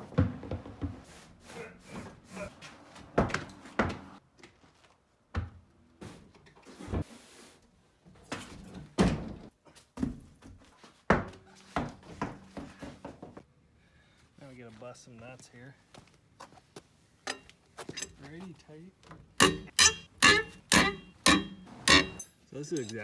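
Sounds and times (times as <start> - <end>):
tools and lug nuts knocking: 17.3 - 18.2, 19.4 - 23.0.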